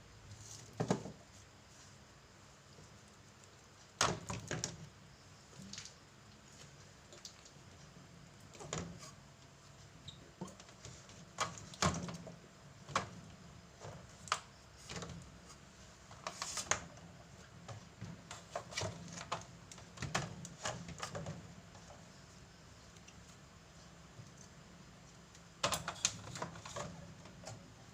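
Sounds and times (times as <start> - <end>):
items knocking and clattering: 0.7 - 1.2, 25.6 - 27.7.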